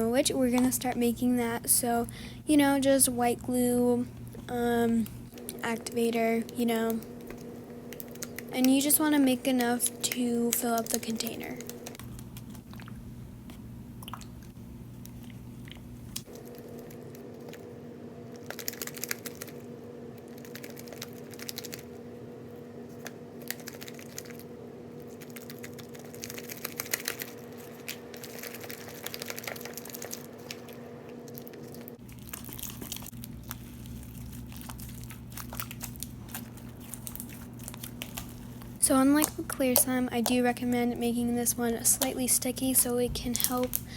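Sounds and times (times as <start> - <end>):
slime crackling and squishing: 25.0 - 43.9.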